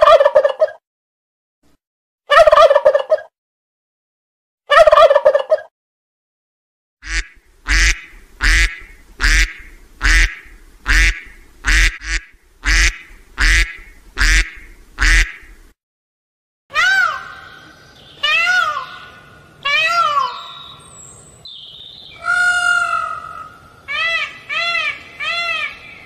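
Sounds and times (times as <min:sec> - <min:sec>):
turkey gobble: 0:00.0 - 0:00.8, 0:02.3 - 0:03.3, 0:04.7 - 0:05.7
harsh waterfowl calls: 0:07.0 - 0:15.6.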